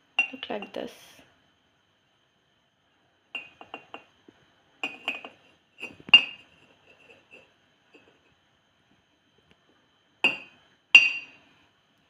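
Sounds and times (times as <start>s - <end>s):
metal spoon clinking against mug: 0.2s - 0.8s, 3.4s - 4.0s, 4.8s - 7.4s, 10.3s - 11.4s.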